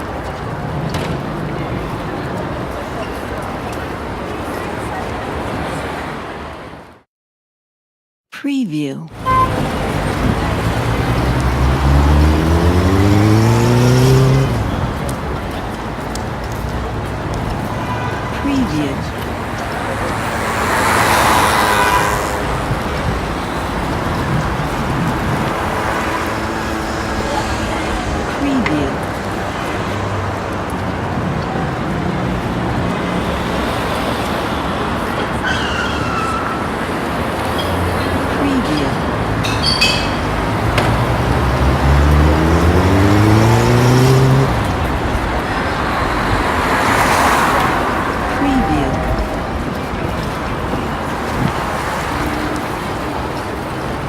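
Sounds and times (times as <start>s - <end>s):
road traffic rumble: 0.0s - 7.1s, 9.1s - 54.0s
vehicle passing close: 9.2s - 17.7s, 36.4s - 54.0s.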